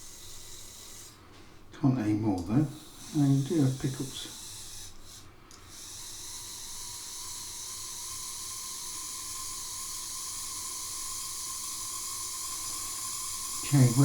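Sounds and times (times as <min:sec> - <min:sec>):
model locomotive motor whine: 0:00.0 - 0:01.5, 0:02.4 - 0:14.0.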